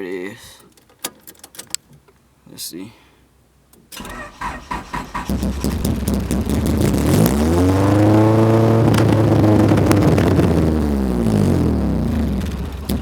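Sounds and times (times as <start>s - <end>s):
loud car engine revving: 5.0s - 13.0s.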